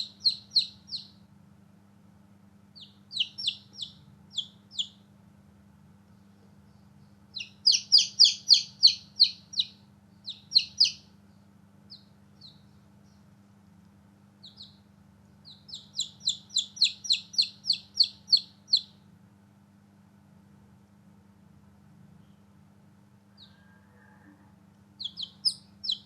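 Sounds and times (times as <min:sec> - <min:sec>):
baby chicks peeping: 0:00.0 - 0:01.3, 0:02.7 - 0:05.2, 0:06.0 - 0:19.1, 0:23.3 - 0:26.0.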